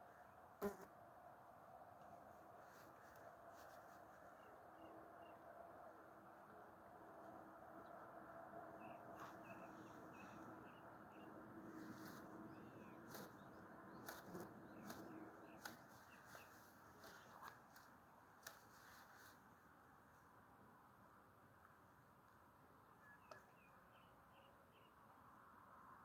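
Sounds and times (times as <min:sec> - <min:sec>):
small bird chirping: 0:08.8 - 0:17.8.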